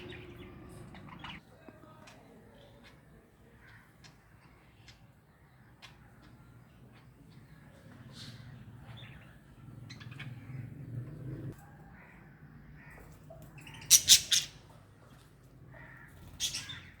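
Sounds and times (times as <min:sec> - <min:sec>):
budgerigars chirping and squawking: 0:00.0 - 0:01.4, 0:13.6 - 0:14.7, 0:15.9 - 0:17.0
harsh bird calls: 0:00.0 - 0:01.4, 0:05.4 - 0:14.7, 0:15.7 - 0:17.0.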